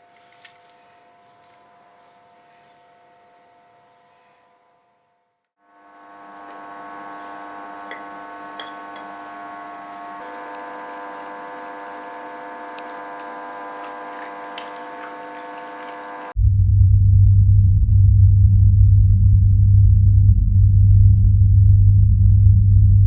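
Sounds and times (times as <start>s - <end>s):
hum of held tones: 5.6s - 23.0s.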